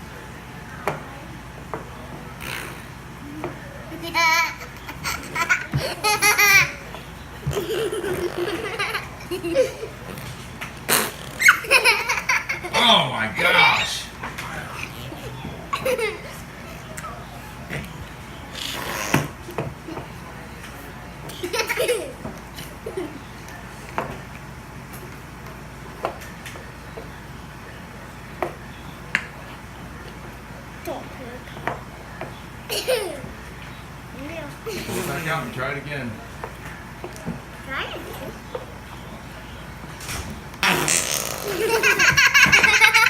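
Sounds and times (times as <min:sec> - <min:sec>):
children giggling and laughing: 0:03.8 - 0:10.2, 0:11.0 - 0:17.6, 0:21.3 - 0:23.3, 0:32.7 - 0:33.3, 0:40.7 - 0:43.0.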